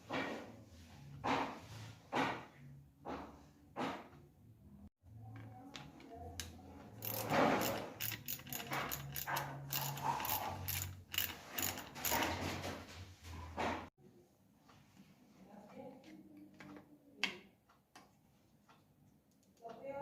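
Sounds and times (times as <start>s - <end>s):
power tool being handled: 6.0s - 12.7s.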